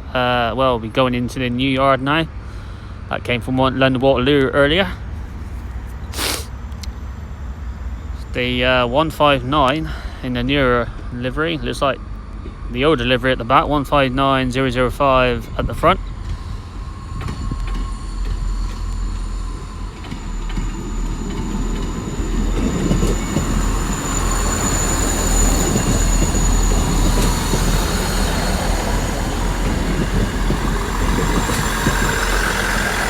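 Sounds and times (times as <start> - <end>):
diesel train engines: 0.0 - 33.0
train wheels rolling on rails: 12.0 - 33.0.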